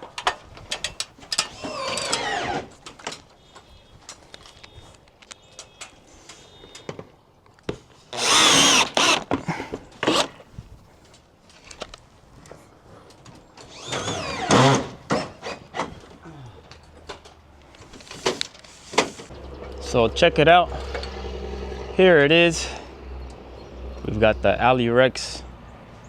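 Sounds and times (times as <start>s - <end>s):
power drill driving screws: 1.4s - 2.7s, 8.2s - 9.3s, 10.0s - 10.3s, 13.6s - 15.9s.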